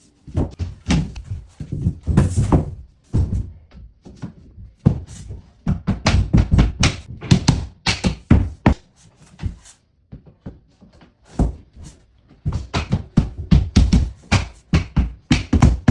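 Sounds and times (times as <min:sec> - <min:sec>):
flooring planks being tapped: 0:03.2 - 0:08.8, 0:12.4 - 0:15.9.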